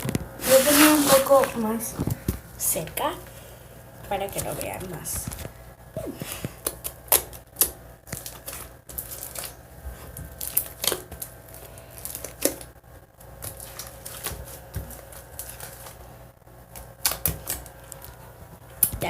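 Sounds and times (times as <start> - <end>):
slime clicking and popping: 17.0 - 17.6.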